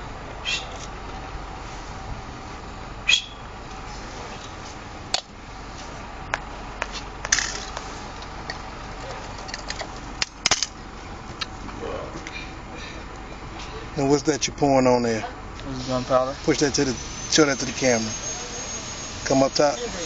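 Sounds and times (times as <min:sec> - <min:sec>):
sharp clicks and light knocks: 0:06.3 - 0:12.4.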